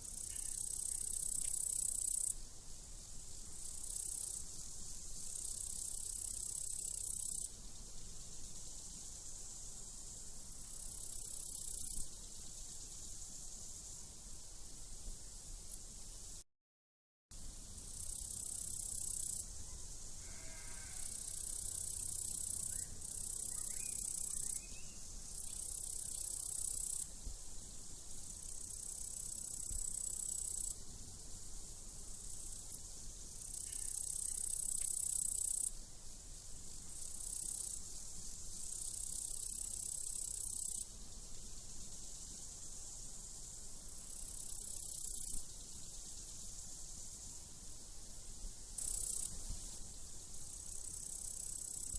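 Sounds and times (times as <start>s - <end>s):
crickets chirping: 0.0s - 16.4s, 17.4s - 51.9s
sheep bleating faintly: 20.2s - 21.2s.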